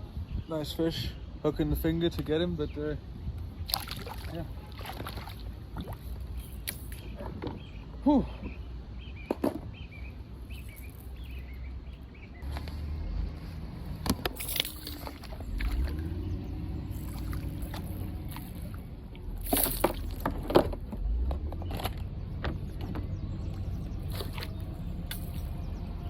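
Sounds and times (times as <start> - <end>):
water sloshing against hull: 3.7 - 7.7, 14.4 - 16.1, 22.5 - 25.5.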